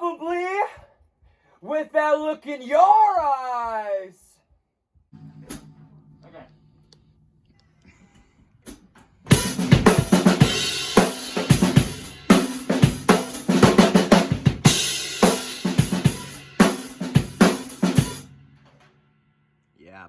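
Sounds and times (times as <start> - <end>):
drum kit playing a beat: 9.3 - 18.6.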